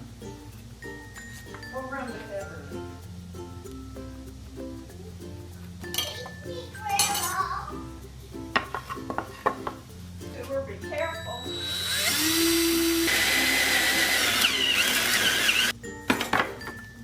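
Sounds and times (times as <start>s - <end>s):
background music: 0.0s - 17.0s
light clinks: 0.5s - 11.8s
power tool running at high speed: 11.6s - 15.7s.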